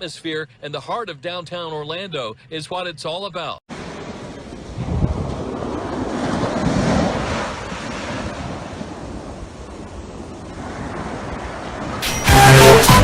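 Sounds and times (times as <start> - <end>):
wind: 0.0 - 13.0
surf rushing: 3.7 - 13.0.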